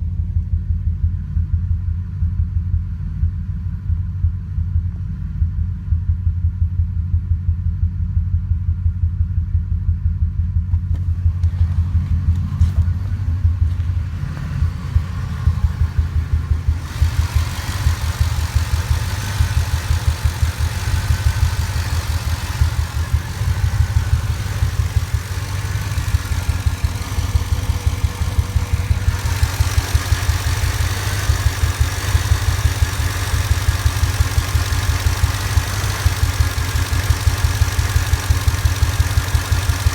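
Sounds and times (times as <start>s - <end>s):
engine idling roughly: 10.0s - 39.9s.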